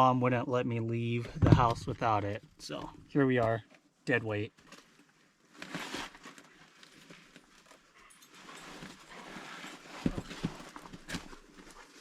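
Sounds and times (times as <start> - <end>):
thumps: 1.2 - 3.1.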